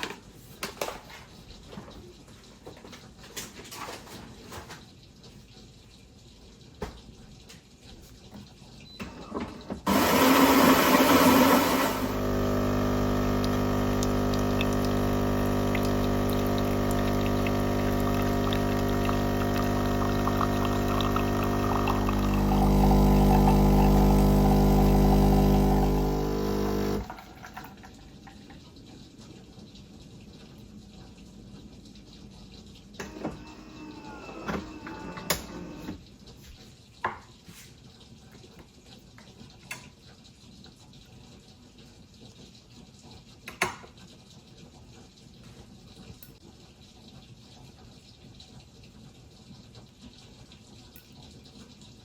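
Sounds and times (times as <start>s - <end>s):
coffee machine pump humming: 9.8s - 28.0s, 33.0s - 36.0s
coffee machine rush of noise: 9.9s - 27.6s.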